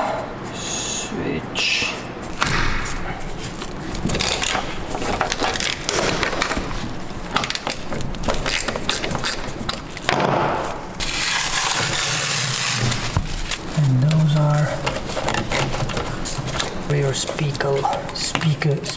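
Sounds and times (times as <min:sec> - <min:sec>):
plastic rustling: 0:02.2 - 0:18.9
wiring clicks and knocks: 0:02.4 - 0:18.9
scraping rustle: 0:02.8 - 0:18.9.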